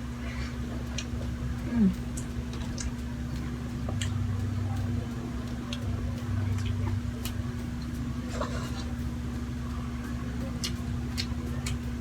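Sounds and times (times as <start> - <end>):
steady low hum: 0.0 - 12.0
person eating: 8.3 - 9.0.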